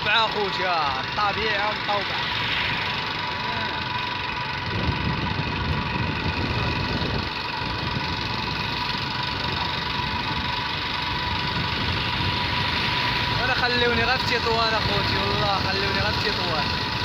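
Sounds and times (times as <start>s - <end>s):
road noise: 0.0s - 17.0s
vehicle engine: 0.0s - 17.0s.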